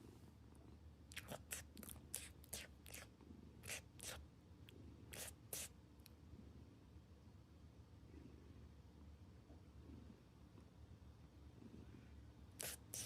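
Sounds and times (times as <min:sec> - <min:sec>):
wet slurping: 0:01.1 - 0:04.2, 0:05.2 - 0:05.7, 0:12.6 - 0:13.0.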